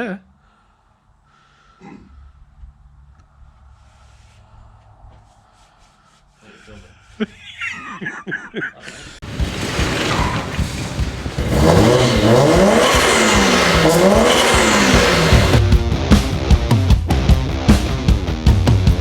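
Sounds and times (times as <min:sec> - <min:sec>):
car engine revving: 0:09.2 - 0:15.6
loud rushing noise: 0:09.2 - 0:15.6.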